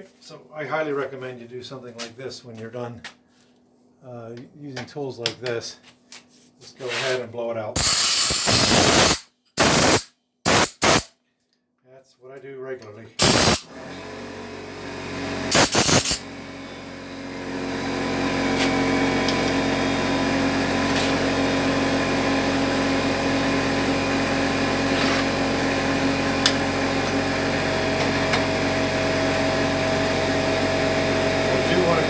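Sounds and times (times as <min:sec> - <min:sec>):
air blow gun blasts: 0:07.8 - 0:11.1, 0:13.2 - 0:13.7, 0:15.5 - 0:16.2
motor humming and hissing: 0:13.2 - 0:32.0.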